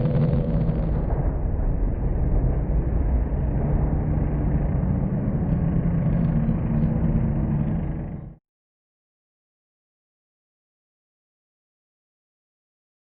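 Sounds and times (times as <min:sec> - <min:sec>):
racing car engines running: 0:00.0 - 0:08.4.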